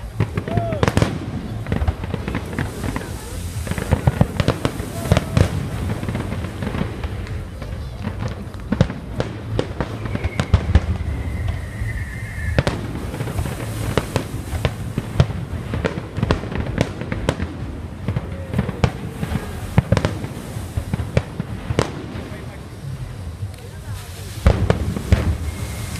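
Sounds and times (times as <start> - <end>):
fireworks bangs and crackles: 0.0 - 25.9
firework falling whistle: 9.6 - 15.0, 24.5 - 25.9.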